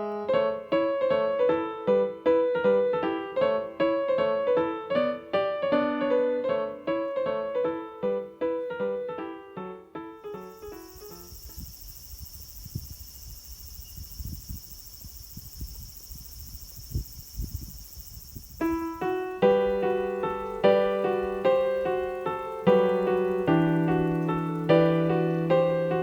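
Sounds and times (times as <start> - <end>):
piano music: 0.0 - 11.4, 18.6 - 26.0
insects chirping: 10.2 - 26.0.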